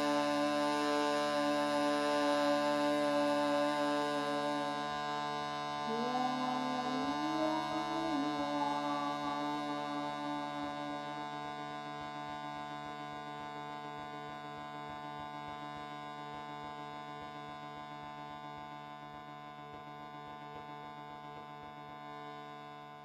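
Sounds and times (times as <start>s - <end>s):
wordless voice rising note: 0.0s - 5.0s, 5.9s - 11.5s
reed drone chord: 0.0s - 13.2s.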